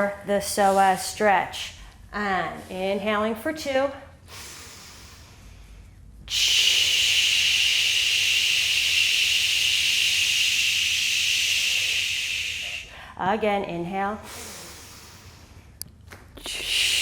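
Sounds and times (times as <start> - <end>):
person breathing out through lips: 6.3 - 13.1.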